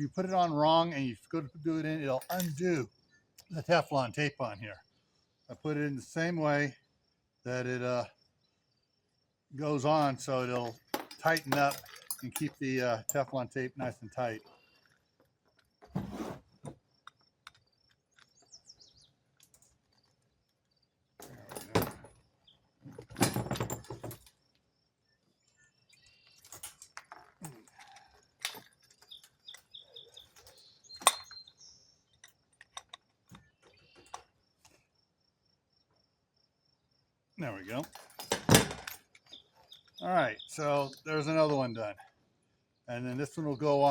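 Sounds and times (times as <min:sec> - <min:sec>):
faint bird chirps: 0:02.9 - 0:03.4, 0:24.9 - 0:26.5, 0:29.0 - 0:32.3, 0:33.3 - 0:34.3.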